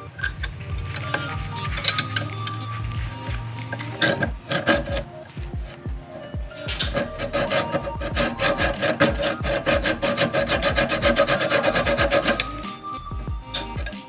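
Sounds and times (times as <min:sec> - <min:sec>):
hacksaw cutting metal: 0:00.0 - 0:14.0
music beat: 0:00.0 - 0:14.0.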